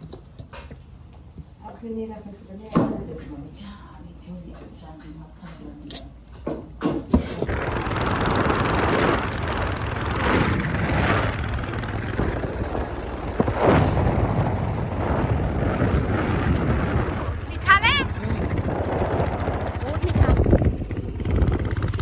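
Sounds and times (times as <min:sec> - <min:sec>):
motorcycle running: 0:07.4 - 0:22.0
wind on microphone: 0:07.5 - 0:22.0.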